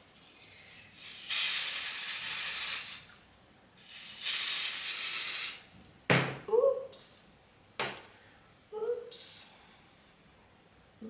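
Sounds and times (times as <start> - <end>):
aerosol spray can hissing: 1.0 - 3.1, 3.8 - 5.7.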